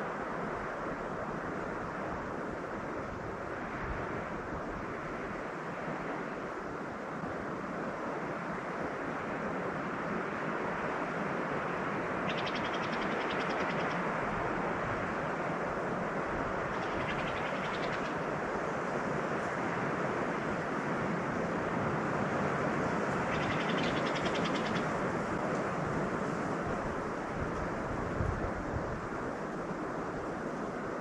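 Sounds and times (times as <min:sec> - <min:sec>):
steady rushing noise: 0:00.0 - 0:31.0
songbird high trill: 0:12.3 - 0:14.0, 0:23.3 - 0:24.9.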